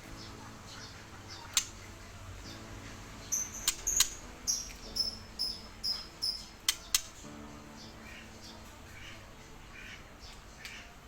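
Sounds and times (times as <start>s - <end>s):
bird chirping: 0.0s - 11.0s
sharp clicks: 6.6s - 7.2s.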